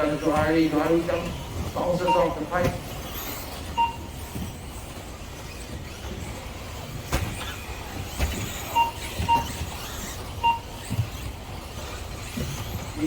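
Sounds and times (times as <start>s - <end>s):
toy car motors and tyres: 0.0s - 13.0s
high electronic beeps: 1.9s - 2.5s, 3.7s - 4.2s, 8.7s - 9.7s, 10.4s - 10.8s.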